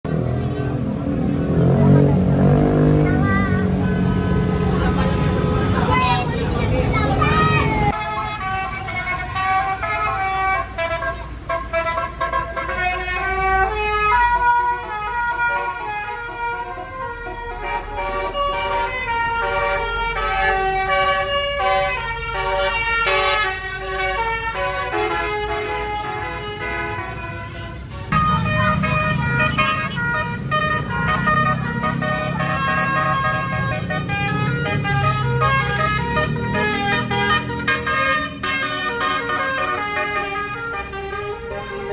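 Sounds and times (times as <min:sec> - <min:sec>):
low engine rumble: 0:00.1 - 0:11.0, 0:25.5 - 0:41.9
musical air horn tune: 0:15.0 - 0:41.9.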